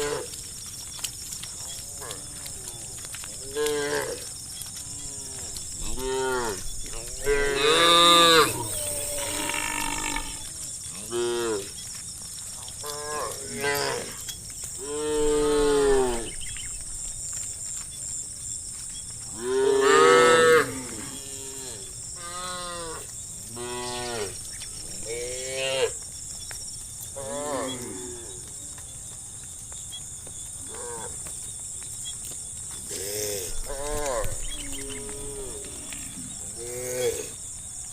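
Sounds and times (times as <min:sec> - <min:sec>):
cows mooing: 0:04.9 - 0:11.7, 0:19.4 - 0:23.0.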